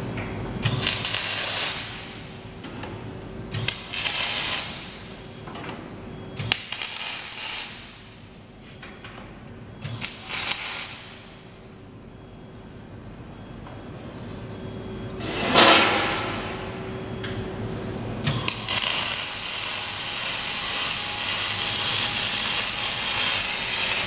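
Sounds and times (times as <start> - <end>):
arc welding crackling: 0.6 - 2.3, 3.5 - 5.1, 6.4 - 8.2, 10.0 - 11.3, 18.2 - 24.0.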